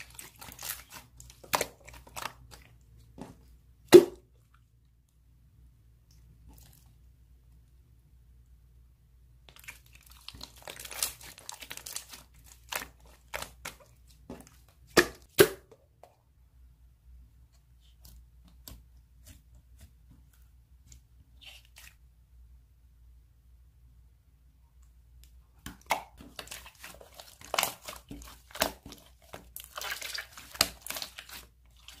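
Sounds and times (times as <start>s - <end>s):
slime crackling: 0.0s - 2.8s, 9.5s - 14.2s, 25.8s - 32.0s.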